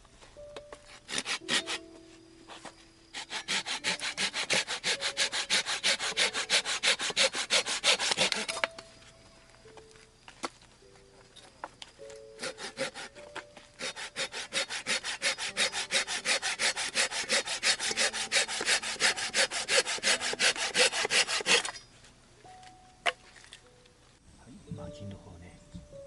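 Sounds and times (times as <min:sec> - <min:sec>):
hand saw cutting wood: 0:01.0 - 0:01.8, 0:03.1 - 0:08.6, 0:12.4 - 0:21.8.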